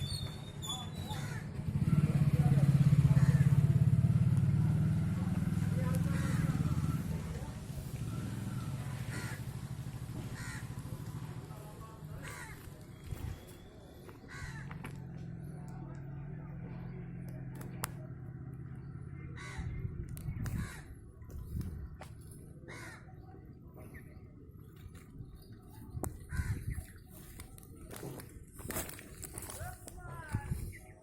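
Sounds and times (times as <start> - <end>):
bird cawing: 1.0 - 1.6, 5.8 - 7.3, 8.0 - 11.2, 12.2 - 13.4, 14.2 - 14.9, 19.4 - 19.8, 20.5 - 21.0, 22.6 - 23.2
low engine hum: 1.2 - 22.6.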